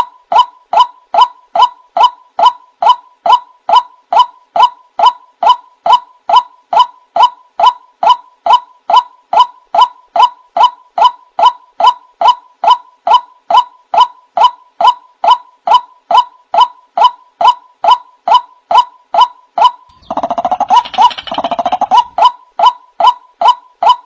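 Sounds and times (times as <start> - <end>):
waterhen calling harsh notes: 19.9 - 22.3.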